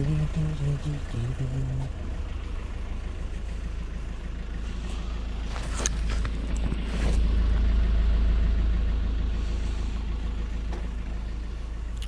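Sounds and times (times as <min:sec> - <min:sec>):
van engine and road rumble: 0:00.0 - 0:12.0.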